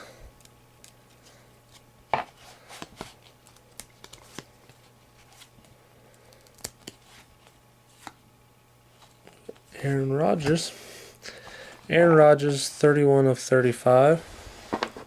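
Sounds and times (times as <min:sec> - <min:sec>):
trading cards being handled: 0:00.4 - 0:08.2.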